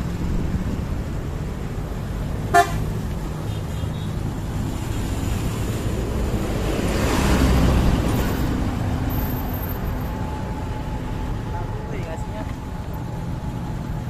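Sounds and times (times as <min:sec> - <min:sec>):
wind on microphone: 0:00.0 - 0:01.4
vehicle passing close by: 0:00.0 - 0:11.5
road vehicle noise: 0:00.0 - 0:14.0.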